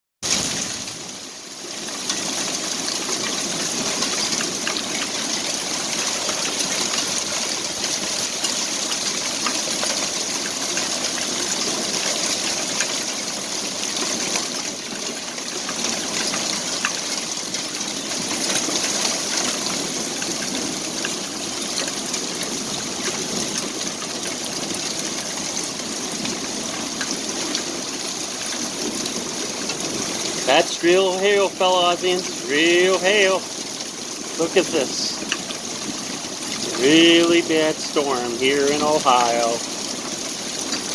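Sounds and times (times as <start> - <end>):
hailstones ticking: 0.3 - 40.9
heavy rain hiss: 26.3 - 40.9.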